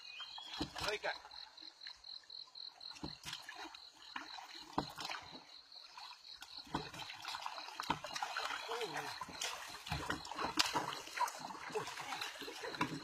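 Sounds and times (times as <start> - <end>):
water dripping and splashing: 0.0 - 13.0.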